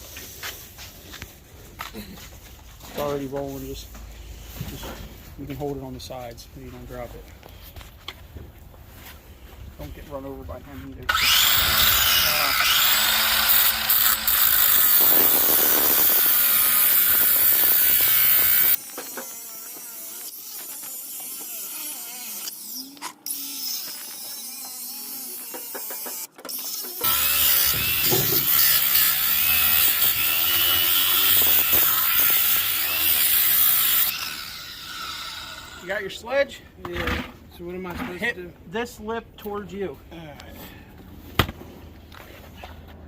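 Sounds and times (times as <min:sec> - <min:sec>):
power tool grinding steel: 0:11.1 - 0:36.2.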